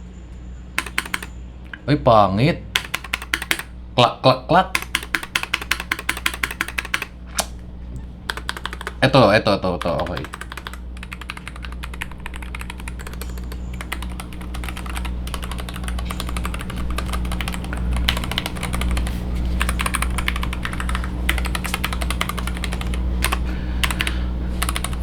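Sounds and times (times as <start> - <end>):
fast typing on mechanical keyboard: 0.8 - 1.3, 2.8 - 3.7, 4.7 - 25.0
low hum: 2.8 - 25.0.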